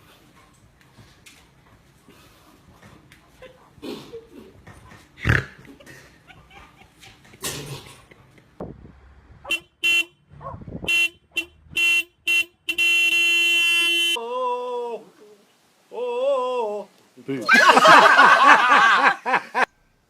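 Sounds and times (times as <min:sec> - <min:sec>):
horn honking: 0:09.4 - 0:14.2.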